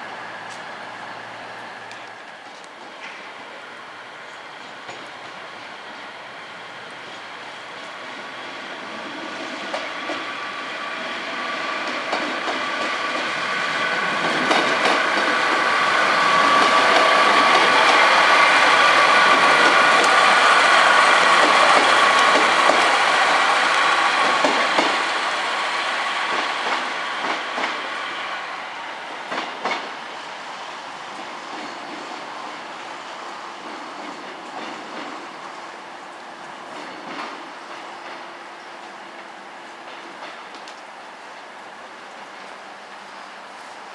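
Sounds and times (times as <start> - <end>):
train passing with whine: 0.0 - 43.9
wheels clicking over rail joints: 11.8 - 18.1.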